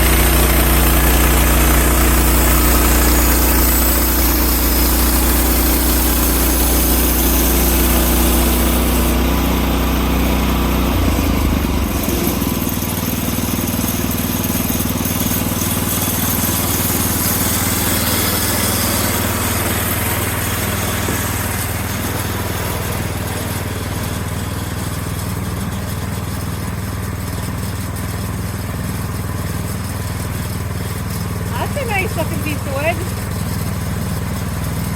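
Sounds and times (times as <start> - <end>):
bandsaw blade cutting log: 0.0 - 24.9
gas engine running: 0.0 - 34.9.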